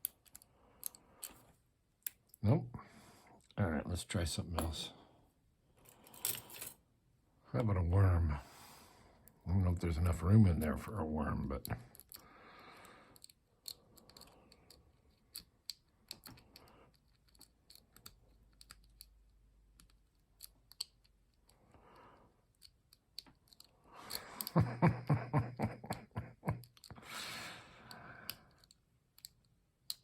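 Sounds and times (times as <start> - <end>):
lock pick clicking in a lock: 0.0 - 1.4, 11.6 - 12.2, 13.1 - 21.6, 22.4 - 24.6, 28.2 - 30.0.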